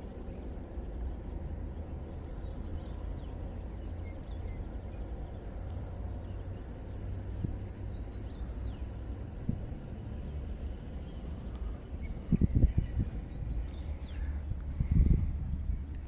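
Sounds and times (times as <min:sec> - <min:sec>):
steady low rumble: 0:05.2 - 0:16.0.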